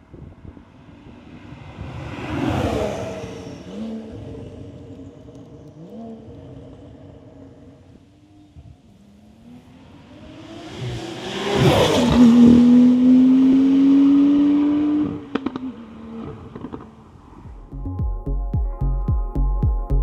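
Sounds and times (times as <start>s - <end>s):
car engine accelerating: 0.1s - 17.8s
exhaust pops and crackles: 15.3s - 17.7s.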